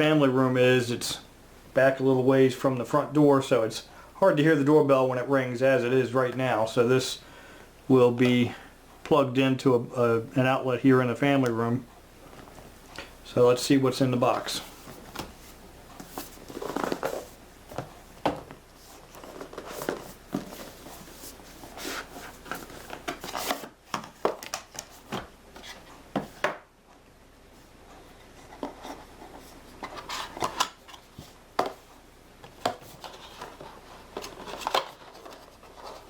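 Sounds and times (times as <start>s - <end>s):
cardboard box rustling: 14.4s - 24.4s.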